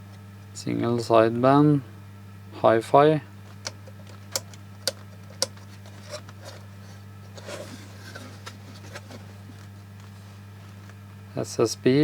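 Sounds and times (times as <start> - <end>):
low electrical hum: 0.0 - 12.0
sharp clicks and taps: 3.6 - 5.6.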